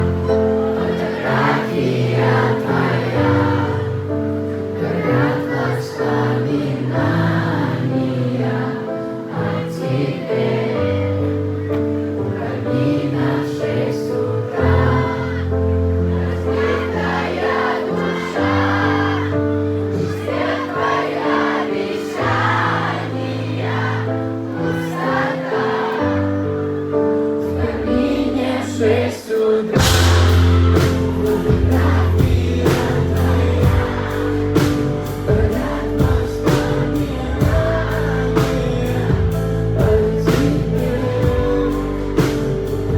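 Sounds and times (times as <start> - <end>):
choir of voices singing: 0.0 - 42.9
held keyboard chords: 0.0 - 42.9
deep bass line: 29.8 - 42.9.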